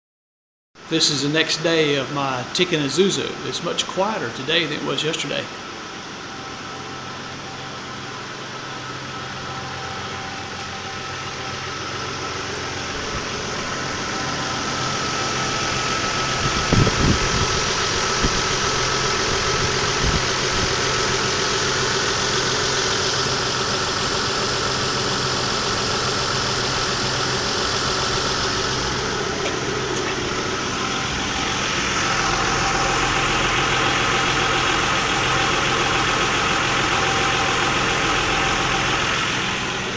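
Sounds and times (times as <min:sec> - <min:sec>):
car engine idling: 0:00.8 - 0:39.9.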